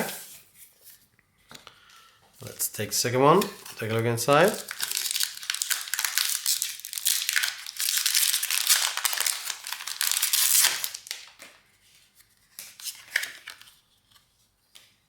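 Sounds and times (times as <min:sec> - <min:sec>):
foil wrapper tearing and crinkling: 0:04.5 - 0:11.4.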